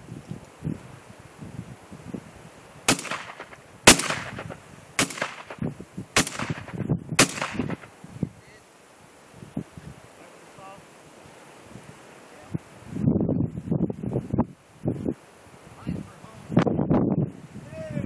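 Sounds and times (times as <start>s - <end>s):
light wind: 0.0s - 18.0s
shotgun shots: 2.9s - 7.9s.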